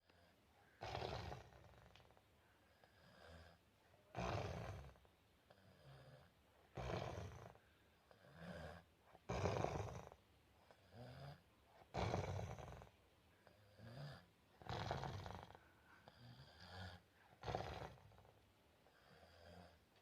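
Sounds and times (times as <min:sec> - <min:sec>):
man snoring: 0:00.1 - 0:02.0, 0:02.8 - 0:10.2, 0:10.8 - 0:18.3, 0:18.9 - 0:19.8
soft breathing: 0:15.3 - 0:17.4.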